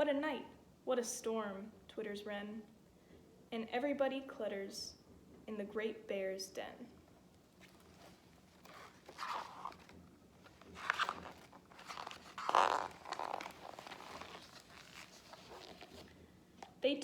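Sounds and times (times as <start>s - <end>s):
paper pages rustling: 7.4s - 16.2s.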